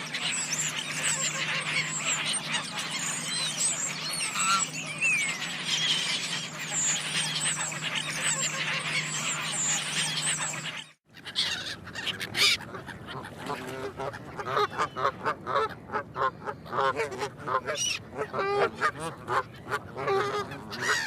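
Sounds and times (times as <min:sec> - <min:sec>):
geese honking: 0:00.0 - 0:10.8, 0:11.4 - 0:21.0
bird calls: 0:00.0 - 0:15.3.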